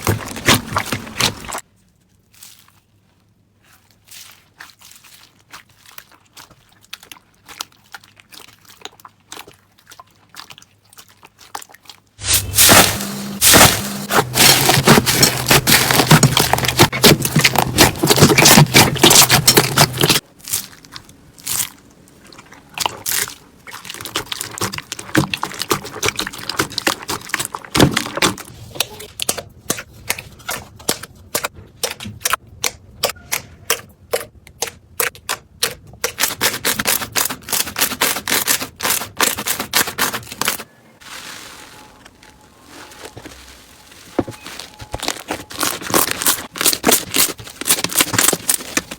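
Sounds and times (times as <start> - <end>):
slime crackling and popping: 12.2 - 21.9, 42.7 - 48.9.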